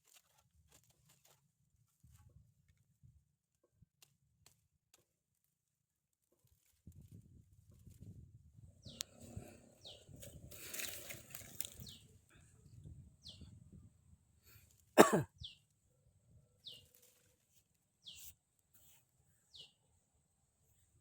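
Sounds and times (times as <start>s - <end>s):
rustling and scraping: 0.0s - 3.0s, 6.2s - 8.2s, 9.0s - 12.1s, 16.6s - 19.2s.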